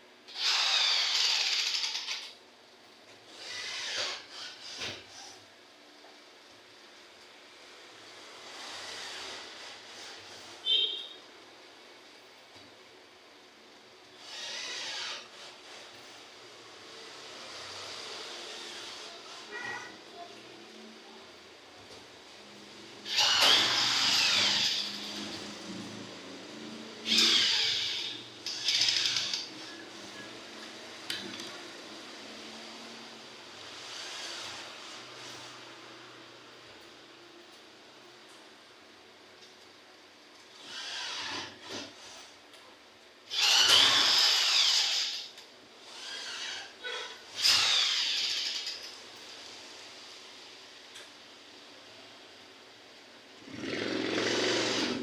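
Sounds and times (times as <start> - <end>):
rivet gun motor whine: 0.3 - 2.4, 14.2 - 16.1, 23.0 - 25.4, 27.0 - 29.5, 43.3 - 48.9.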